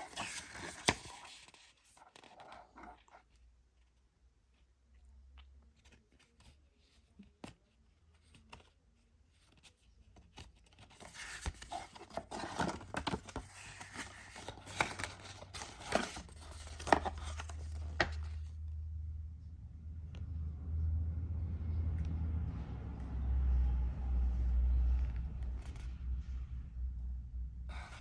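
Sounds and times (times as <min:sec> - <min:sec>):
packaging rustling and tearing: 0:00.0 - 0:02.3, 0:10.9 - 0:18.4
low hum: 0:11.9 - 0:28.0.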